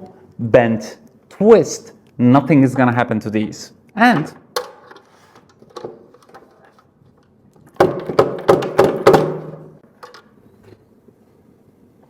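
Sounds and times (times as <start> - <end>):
sharp knocks: 7.8 - 9.8.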